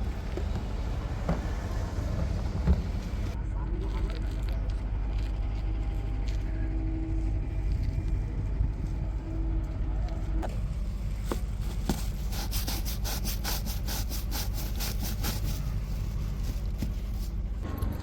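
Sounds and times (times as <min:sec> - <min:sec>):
diesel engine running: 0:00.0 - 0:03.5.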